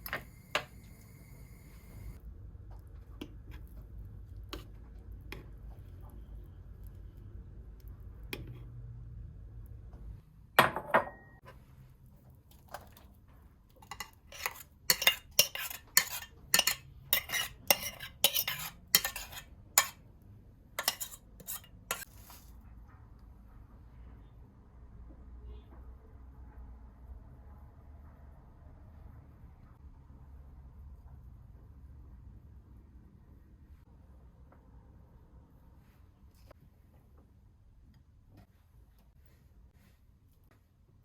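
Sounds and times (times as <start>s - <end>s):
metal spoon clinking dish: 13.8s - 20.0s, 20.8s - 22.1s
spoon clatter: 13.8s - 20.0s, 20.8s - 22.0s.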